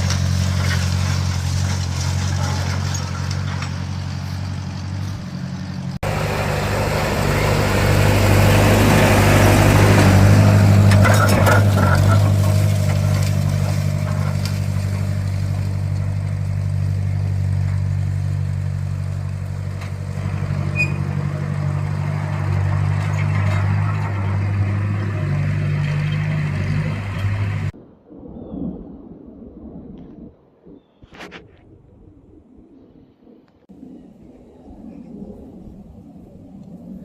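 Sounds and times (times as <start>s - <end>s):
engine running steadily: 0.0s - 27.8s.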